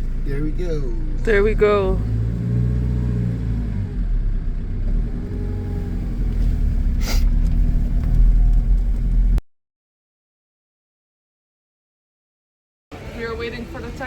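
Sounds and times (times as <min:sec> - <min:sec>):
vehicle engine and road rumble: 0:00.0 - 0:09.4, 0:12.9 - 0:14.0.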